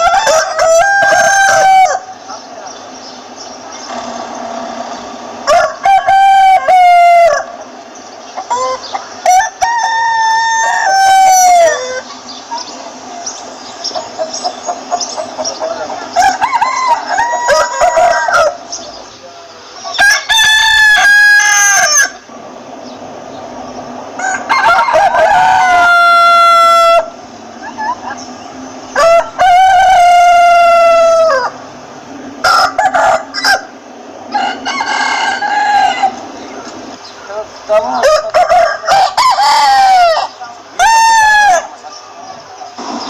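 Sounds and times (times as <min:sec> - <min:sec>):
roosters crowing: 0:00.0 - 0:43.0
hens clucking softly: 0:27.6 - 0:28.4.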